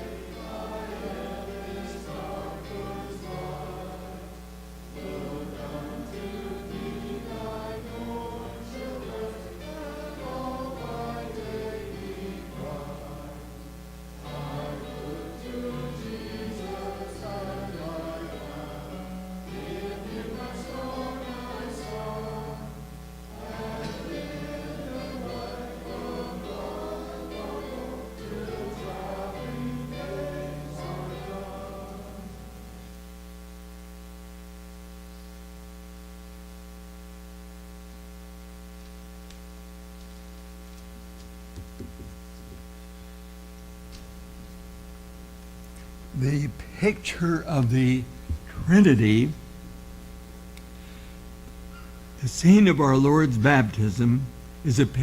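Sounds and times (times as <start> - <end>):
choir singing: 0.0 - 4.4, 5.0 - 32.8
electrical mains hum: 0.0 - 55.0.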